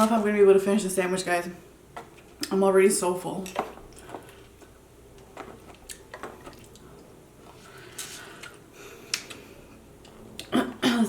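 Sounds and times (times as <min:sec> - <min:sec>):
person chewing food: 0:03.8 - 0:10.5.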